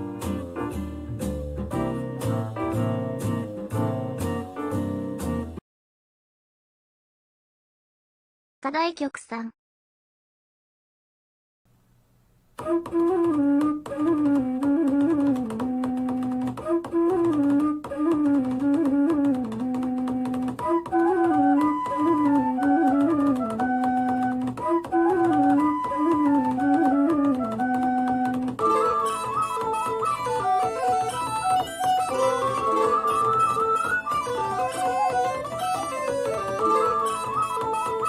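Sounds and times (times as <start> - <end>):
woodwind-like melody: 12.6 - 38.0.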